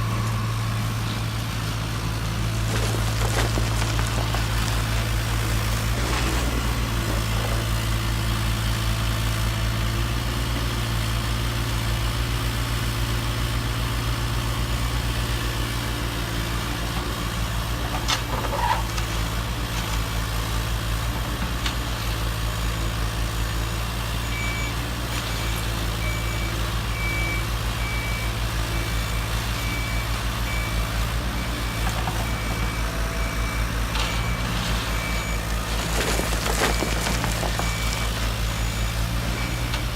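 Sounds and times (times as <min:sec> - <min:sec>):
reversing beeper: 0:00.0 - 0:01.3, 0:25.4 - 0:39.8.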